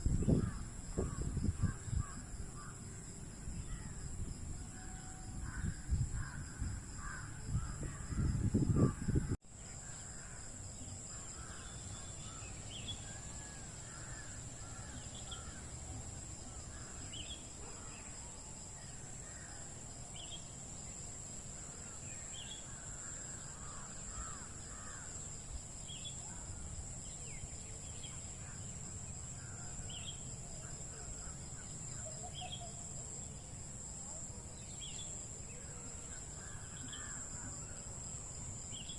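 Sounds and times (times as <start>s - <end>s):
low rumble of wind: 0.0s - 18.6s
high insect-like whine: 0.0s - 38.9s.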